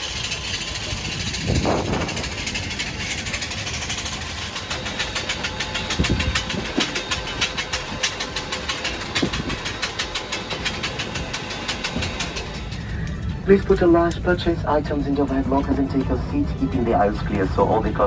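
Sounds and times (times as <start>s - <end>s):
aircraft cabin hum: 0.0s - 18.0s.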